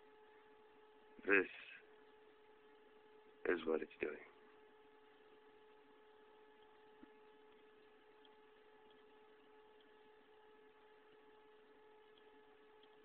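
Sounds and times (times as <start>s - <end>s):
faint stepper motor hum: 0.0s - 13.0s.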